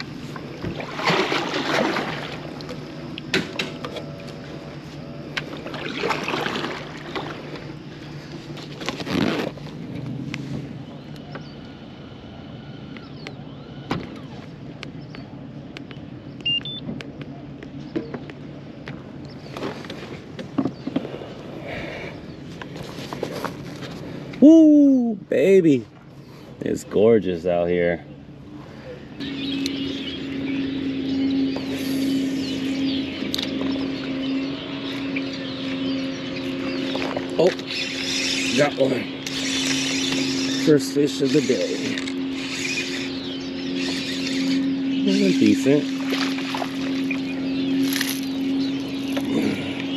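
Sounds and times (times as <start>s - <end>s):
water noise and crackle: 0.0s - 4.4s, 5.3s - 7.8s, 43.8s - 49.4s
electric boat motor humming: 0.0s - 49.9s
short high beeps: 16.4s - 16.8s
electric motor humming: 28.6s - 49.9s.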